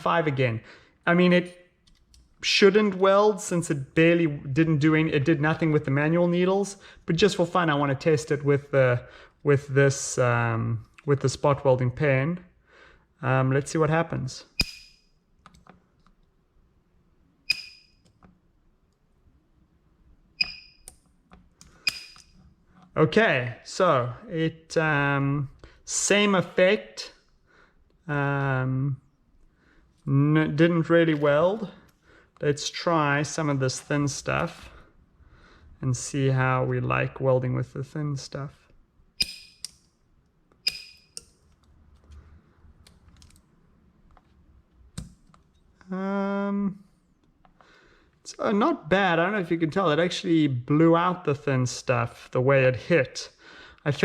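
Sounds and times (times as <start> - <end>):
spot welder snapping: 14.6 - 15.0, 21.6 - 22.3, 39.2 - 39.8, 40.7 - 41.3.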